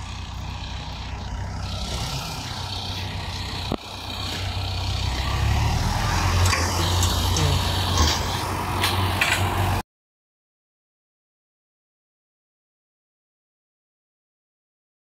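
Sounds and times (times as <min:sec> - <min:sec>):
tractor diesel engine running: 0:00.0 - 0:09.8.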